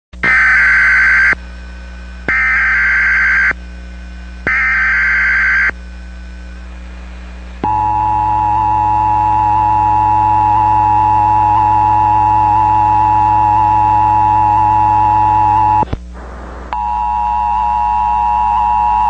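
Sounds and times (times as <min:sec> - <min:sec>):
constant low hum: 0:00.2 - 0:19.0
buzzing digital data bursts: 0:02.3 - 0:03.6, 0:04.5 - 0:05.7.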